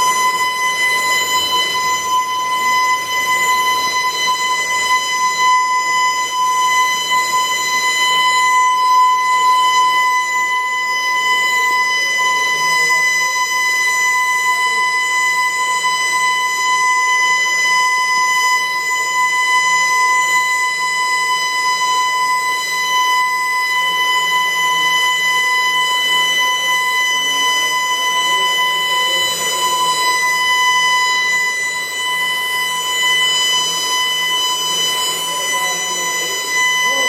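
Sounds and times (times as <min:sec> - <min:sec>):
evacuation alarm steady tone: 0:00.0 - 0:37.0
faint murmur of voices: 0:24.1 - 0:37.0.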